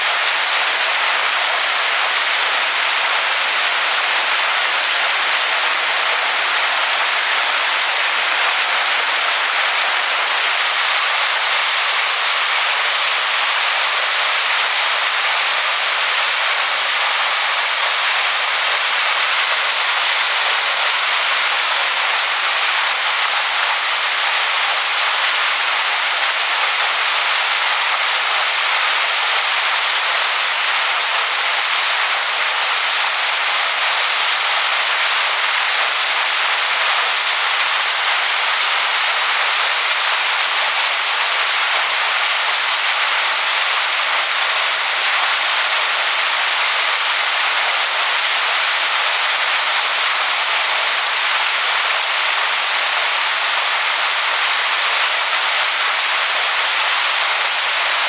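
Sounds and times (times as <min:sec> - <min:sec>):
waterfall rushing over stones: 0:00.0 - 0:58.0.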